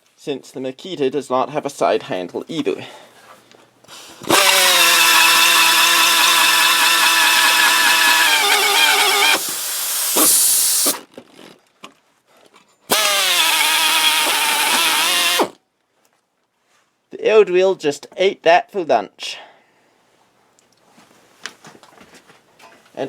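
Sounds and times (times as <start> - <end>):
pneumatic drill whining: 3.9 - 11.1, 12.9 - 15.6.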